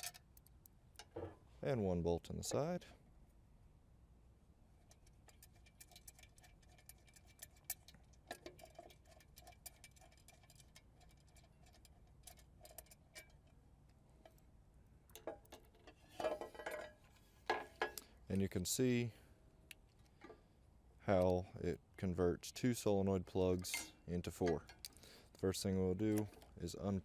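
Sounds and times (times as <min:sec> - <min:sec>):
small metal clicks: 0:00.0 - 0:01.2, 0:23.5 - 0:26.6.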